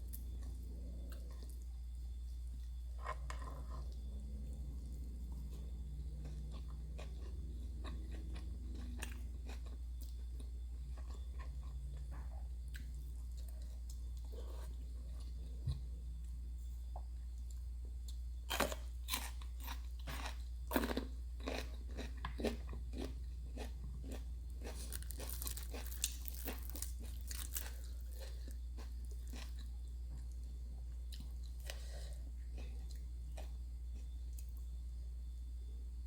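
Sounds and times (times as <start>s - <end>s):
steady low hum: 0.0s - 36.0s
person chewing crunchy food: 2.5s - 15.8s, 18.4s - 34.6s.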